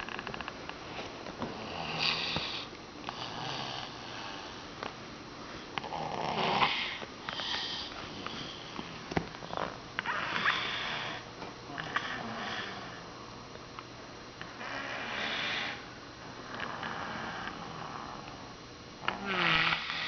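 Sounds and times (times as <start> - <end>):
person snoring: 1.6 - 4.6, 5.8 - 7.9, 9.5 - 13.1, 14.6 - 15.9, 19.0 - 20.0.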